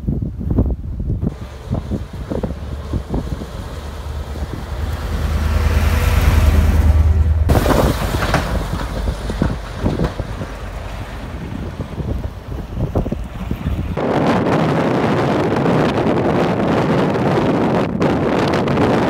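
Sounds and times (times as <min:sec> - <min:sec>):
wind buffeting microphone: 0:00.0 - 0:19.0
vehicle engine hum: 0:00.8 - 0:15.3.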